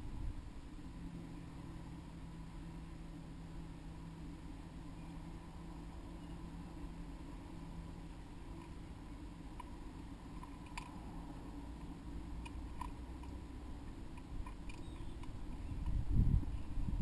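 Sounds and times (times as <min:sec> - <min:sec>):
low steady hum: 0:00.0 - 0:17.0
birds pecking clicks and taps: 0:09.5 - 0:11.0, 0:11.8 - 0:16.0.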